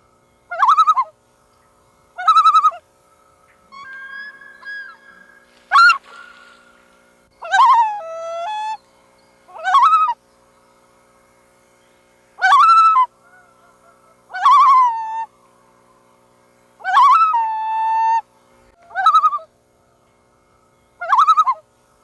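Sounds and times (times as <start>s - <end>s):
loons calling: 0.1s - 10.9s, 12.4s - 21.8s.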